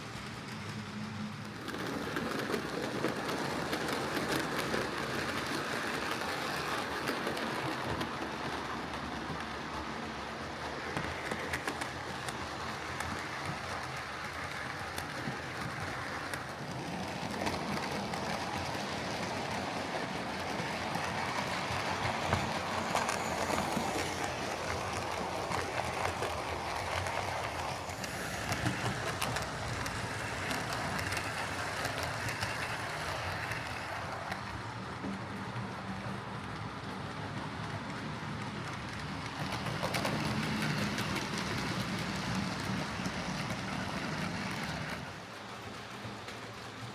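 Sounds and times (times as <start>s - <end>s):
wheels clicking on rails: 0.0s - 46.9s
model train motor whirring: 20.4s - 34.6s.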